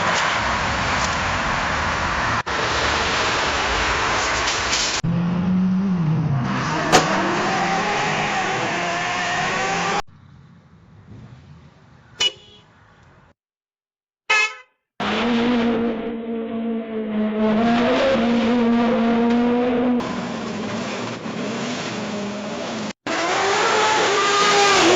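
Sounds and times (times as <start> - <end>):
loud car noise droning: 0.0 - 11.7
loud steady horn tone: 14.3 - 14.9.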